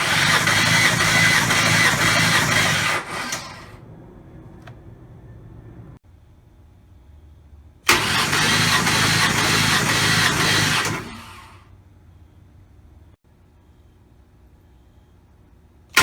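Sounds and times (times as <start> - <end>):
engine revving loudly: 0.0 - 4.3, 7.9 - 11.6
engine running faintly: 0.9 - 6.0.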